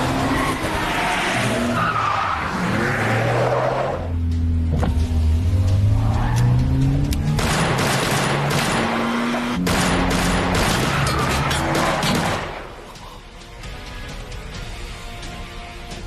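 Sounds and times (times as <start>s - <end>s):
action music score: 0.0s - 16.0s
rapid gunfire: 7.4s - 9.0s, 9.6s - 10.9s.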